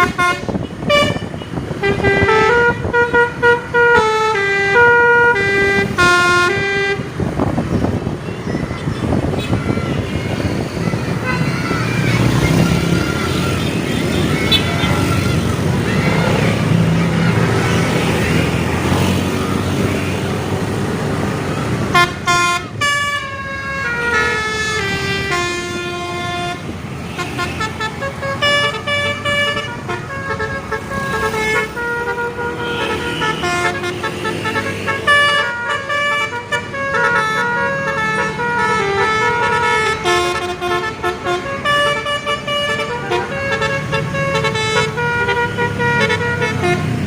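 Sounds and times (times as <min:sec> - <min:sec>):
bus horn playing a melody: 0:00.0 - 0:07.3, 0:21.8 - 0:47.0
bus engine rumble: 0:00.0 - 0:47.0.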